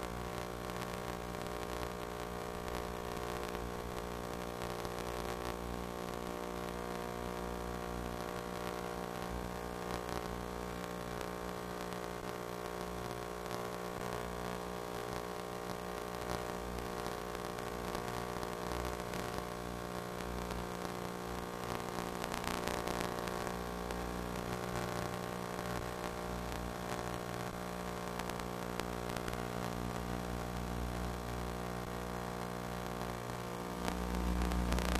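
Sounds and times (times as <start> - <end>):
static hiss: 0.0 - 34.9
electrical hum: 13.0 - 34.9.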